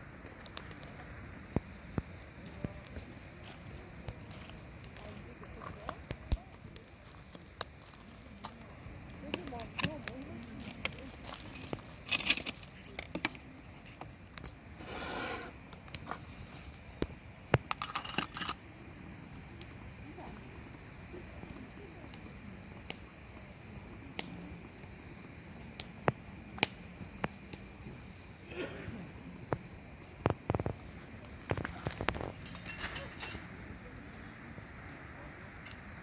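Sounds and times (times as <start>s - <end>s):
campfire crackling and popping: 0.0s - 36.0s
insect trill: 0.0s - 36.0s.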